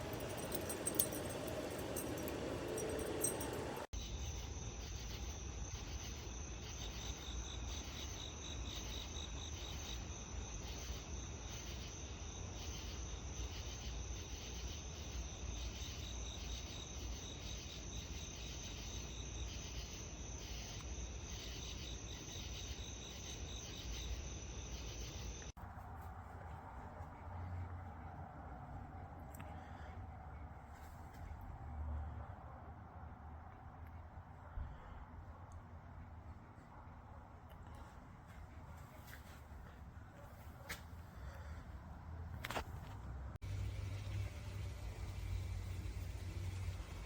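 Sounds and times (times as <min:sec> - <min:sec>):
crickets chirping: 0:00.0 - 0:25.6, 0:42.4 - 0:47.0.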